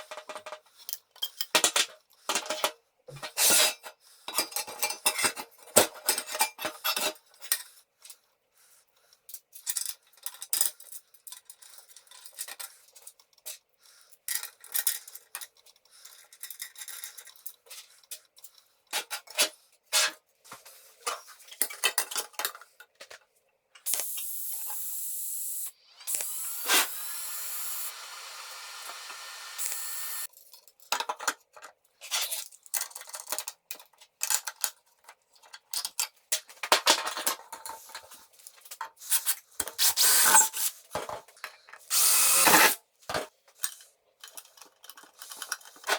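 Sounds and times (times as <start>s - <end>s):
steady hiss: 23.9s - 30.3s.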